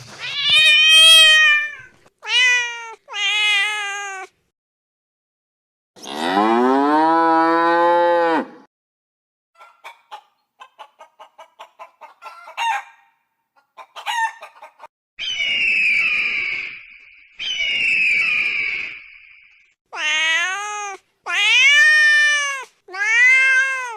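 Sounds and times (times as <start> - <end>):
cow mooing: 6.0 - 8.7
hen clucking and squawking: 9.6 - 14.9.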